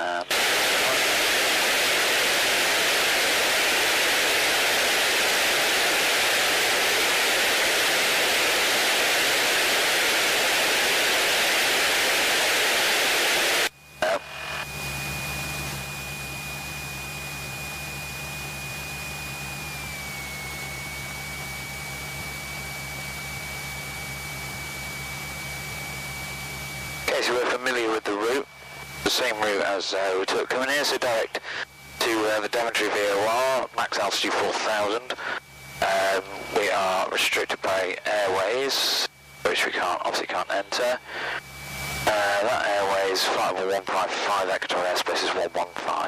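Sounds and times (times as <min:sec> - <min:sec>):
intercom static hiss: 0:00.0 - 0:14.7, 0:27.0 - 0:46.0
high-pitched whine: 0:00.0 - 0:46.0
low hum: 0:31.1 - 0:46.0.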